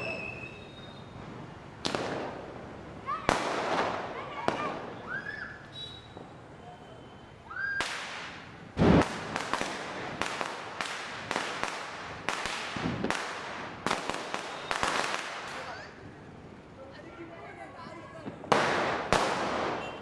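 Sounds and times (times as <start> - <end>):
firework rising whistle: 0.0 - 1.4, 14.4 - 15.1
firecracker bangs: 0.0 - 6.5, 7.8 - 15.9, 18.3 - 20.0.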